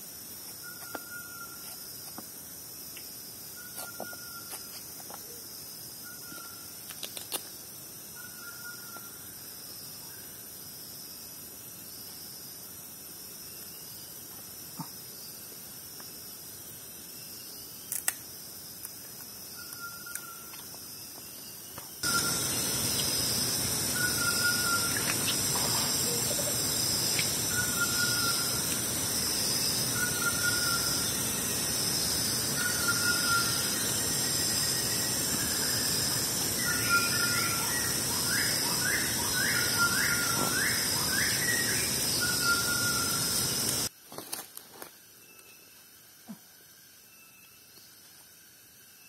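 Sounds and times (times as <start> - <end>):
high-pitched forest drone: 19.5 - 43.9.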